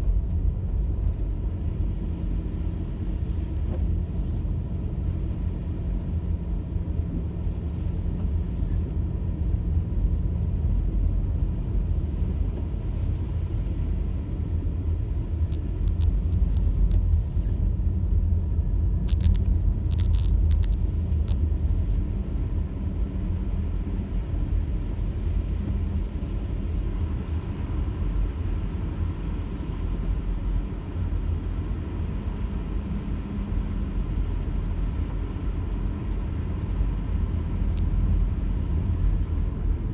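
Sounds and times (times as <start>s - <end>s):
car engine rumble: 0.0s - 39.9s
road noise: 0.0s - 39.9s
short clicks: 19.1s - 21.4s.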